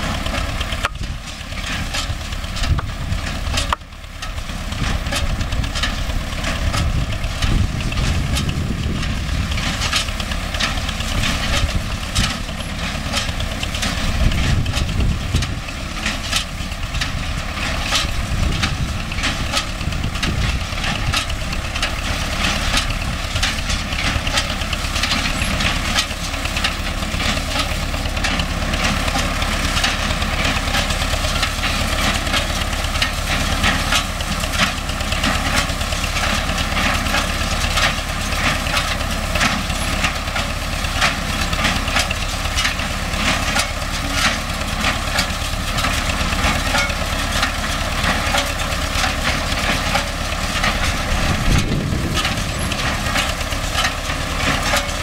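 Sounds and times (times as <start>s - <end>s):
tractor diesel engine running: 0.0s - 55.0s.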